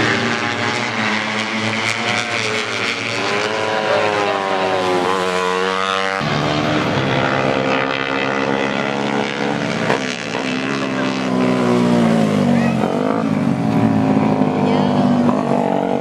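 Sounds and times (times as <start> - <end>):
motorcycle engines revving: 0.0 - 16.0.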